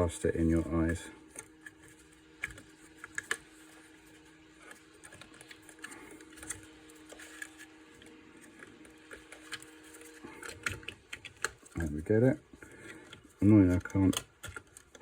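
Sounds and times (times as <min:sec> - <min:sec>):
steady low hum: 0:00.0 - 0:15.0
clicks and scrapes of small parts: 0:00.6 - 0:15.0.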